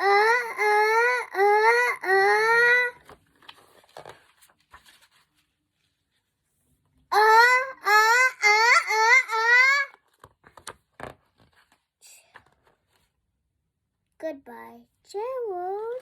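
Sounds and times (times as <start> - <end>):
high voice wailing: 0.0 - 3.0, 7.1 - 10.0.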